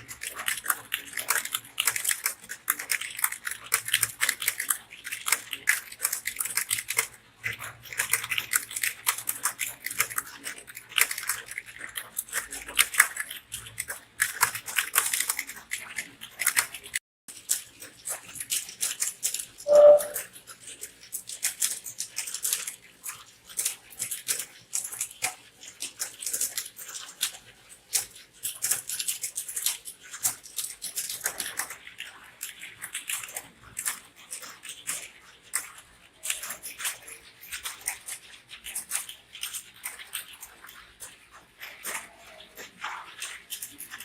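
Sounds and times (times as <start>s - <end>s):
brief tone: 19.7s - 20.2s
keyboard typing: 19.7s - 20.2s.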